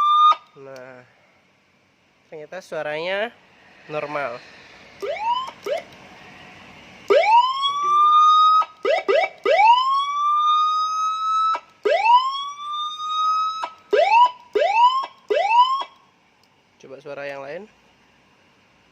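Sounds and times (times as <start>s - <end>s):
electronic siren whoops: 0.0s - 0.5s, 5.0s - 5.9s, 7.1s - 16.0s.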